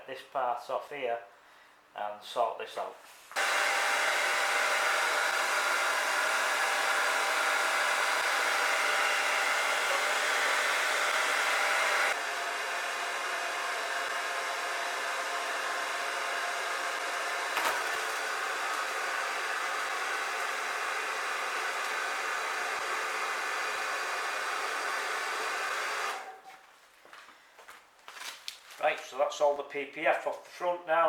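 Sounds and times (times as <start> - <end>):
hair dryer blowing: 3.4 - 26.5.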